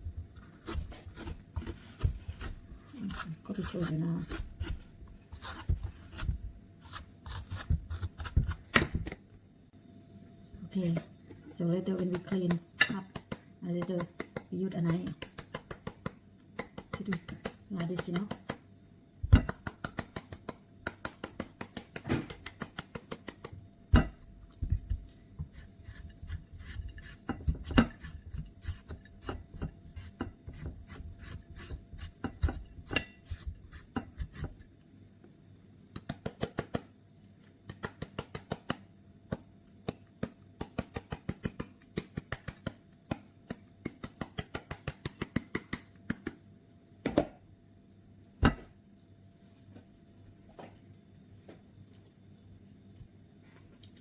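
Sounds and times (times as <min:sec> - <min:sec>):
knife chopping into papaya: 0:00.4 - 0:09.2.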